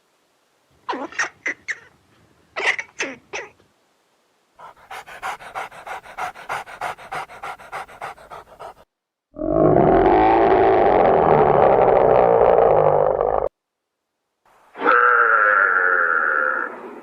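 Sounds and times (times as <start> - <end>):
animal panting rapidly: 4.6 - 8.9
loud long animal call: 14.8 - 17.0.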